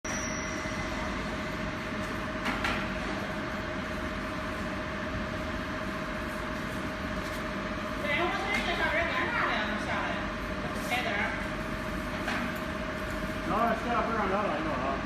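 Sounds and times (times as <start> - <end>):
machine running with whine: 0.0 - 10.5.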